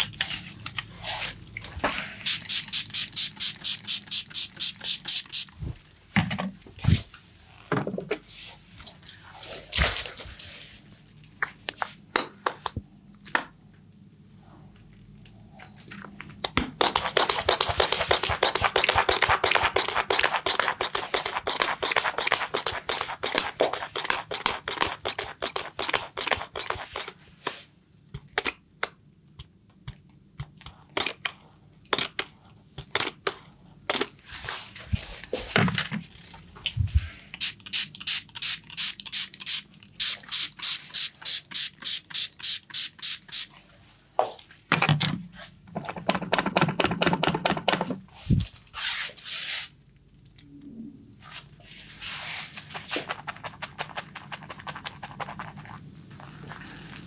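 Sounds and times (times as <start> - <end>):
hands rubbing and tapping head: 16.4 - 27.6.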